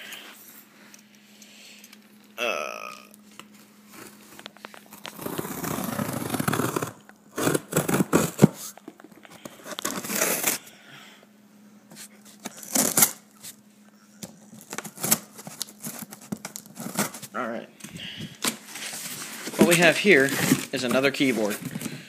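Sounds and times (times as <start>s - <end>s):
tape tearing: 3.9s - 8.8s, 9.6s - 10.6s, 12.4s - 13.6s, 14.3s - 17.3s, 18.4s - 21.9s
cardboard scraping and rustling: 3.9s - 10.6s, 14.5s - 17.3s, 18.4s - 22.0s.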